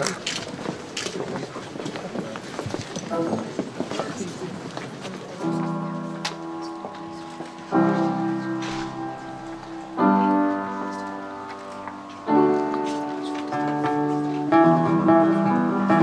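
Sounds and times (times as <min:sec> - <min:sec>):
slow ringing chords: 0:05.5 - 0:16.0.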